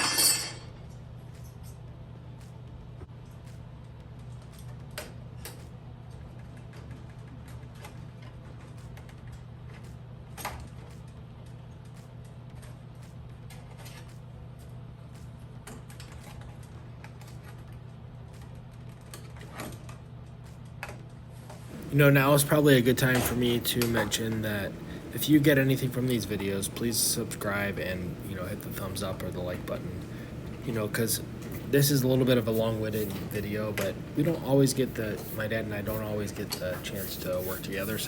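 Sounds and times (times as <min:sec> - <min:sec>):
metal parts and tools clicking: 0:00.0 - 0:00.6
steady low hum: 0:21.7 - 0:38.0.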